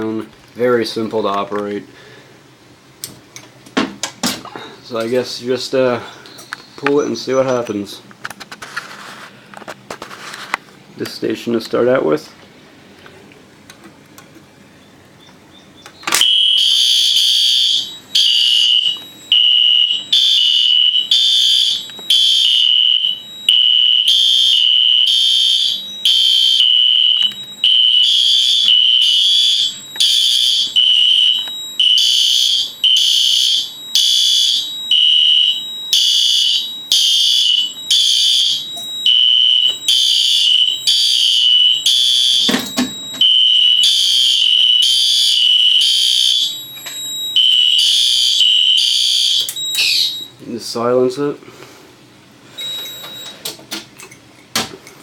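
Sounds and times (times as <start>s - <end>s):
fire alarm horn pulses: 16.2s - 50.4s.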